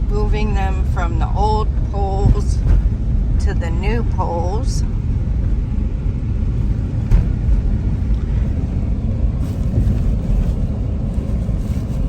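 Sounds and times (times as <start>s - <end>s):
car engine and road rumble: 0.0s - 12.0s
car bump: 2.1s - 3.1s, 6.9s - 8.6s.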